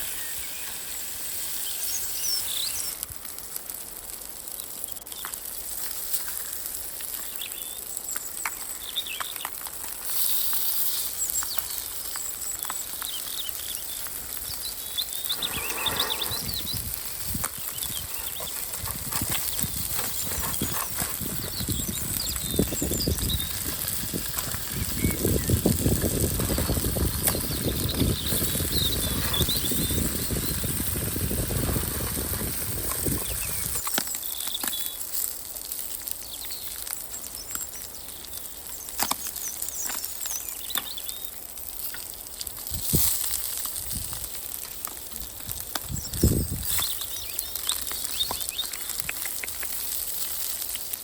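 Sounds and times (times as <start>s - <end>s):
small birds chirping: 0.0s - 3.0s, 7.1s - 9.6s, 10.8s - 31.6s, 32.6s - 35.0s, 36.1s - 42.0s, 44.7s - 49.7s.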